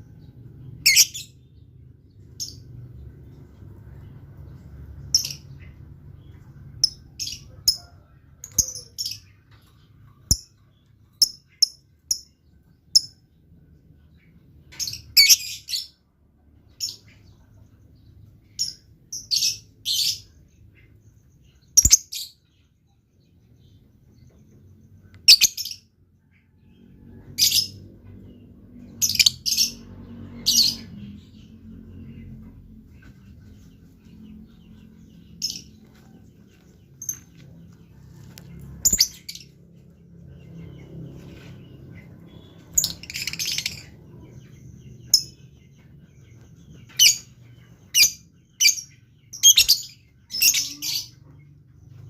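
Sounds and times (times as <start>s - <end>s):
lovebird chirping: 0.8s - 1.4s, 21.4s - 22.5s, 25.1s - 25.9s, 29.0s - 29.9s, 38.0s - 39.7s, 41.7s - 45.6s, 46.3s - 51.2s.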